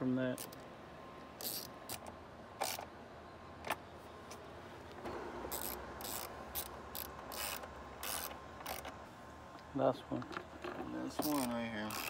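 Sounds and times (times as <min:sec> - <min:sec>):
hand ratchet clicking: 0:01.4 - 0:02.8, 0:05.5 - 0:08.9, 0:11.2 - 0:12.0.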